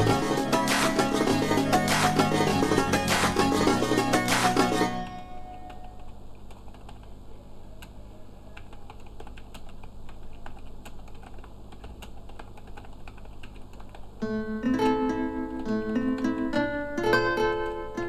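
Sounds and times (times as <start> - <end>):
music: 0.0 - 5.9, 14.2 - 18.0
typing on a keyboard: 5.7 - 7.2, 7.8 - 14.2.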